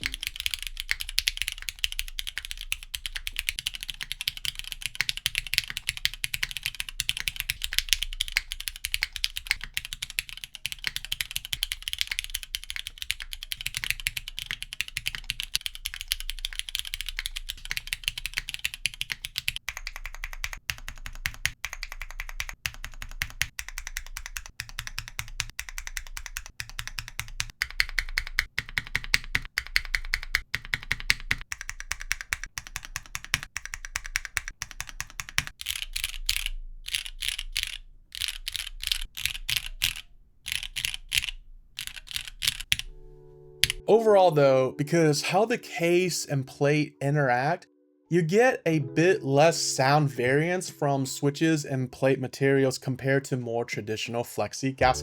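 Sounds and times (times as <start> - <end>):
fast typing on mechanical keyboard: 0.0 - 42.9.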